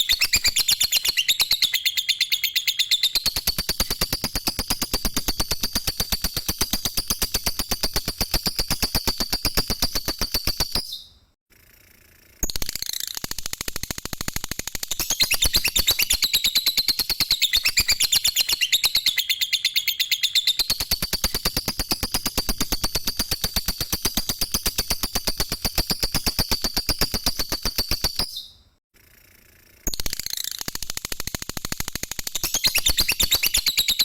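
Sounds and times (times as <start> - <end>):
lovebird chattering trill: 0.0 - 11.0, 15.0 - 22.3.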